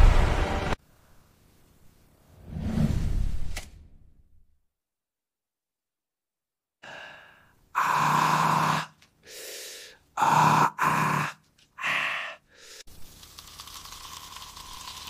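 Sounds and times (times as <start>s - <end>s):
person making breathy sounds: 6.8s - 12.9s.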